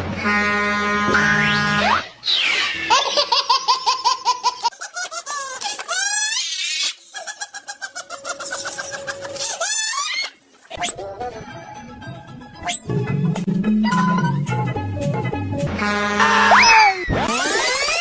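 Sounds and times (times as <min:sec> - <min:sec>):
high-pitched laughter: 0:02.9 - 0:10.3
squeaky shrieks: 0:16.2 - 0:17.8.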